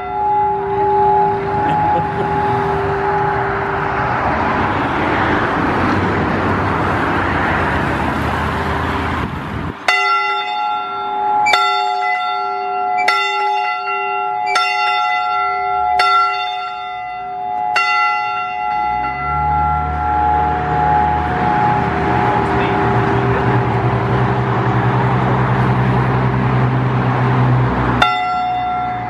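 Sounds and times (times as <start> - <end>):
church bell tolling: 0.0 - 5.7, 9.8 - 26.1, 27.9 - 29.0
steady rushing noise: 0.5 - 9.9, 19.9 - 28.0.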